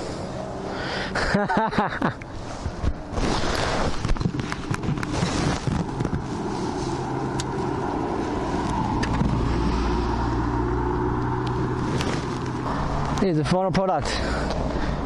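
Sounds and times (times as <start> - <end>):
clicks and crackling: 3.5 - 6.3.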